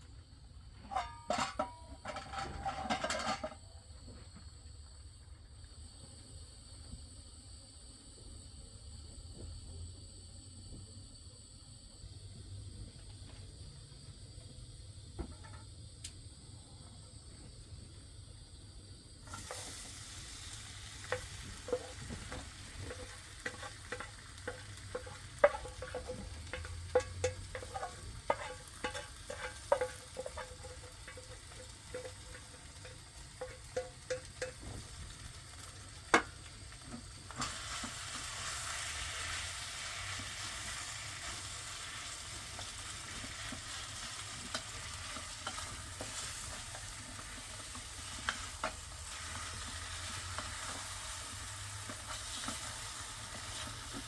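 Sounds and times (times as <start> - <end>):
utensil scraping metal pot: 0.8 - 3.6, 21.0 - 35.0
sizzling hiss: 17.3 - 54.0.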